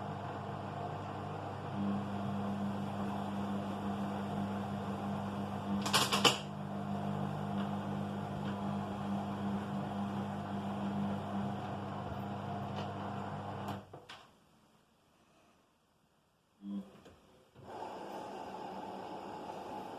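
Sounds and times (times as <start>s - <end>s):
washing machine humming: 0.0s - 14.1s, 16.6s - 19.9s
washing machine rattling clicks: 5.8s - 6.5s.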